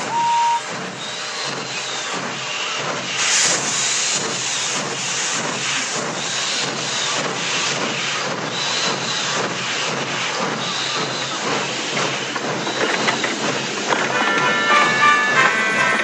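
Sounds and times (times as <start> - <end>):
steam whistle toot: 0.0 - 0.8, 14.1 - 16.0
steam locomotive chuffing: 0.0 - 16.0.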